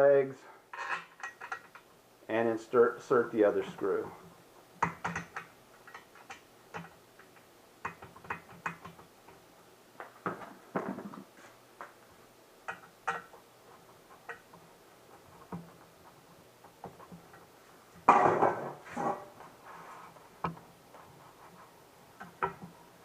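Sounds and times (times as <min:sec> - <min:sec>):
tools tapping metal chair frame: 0:04.8 - 0:09.0, 0:12.7 - 0:13.4.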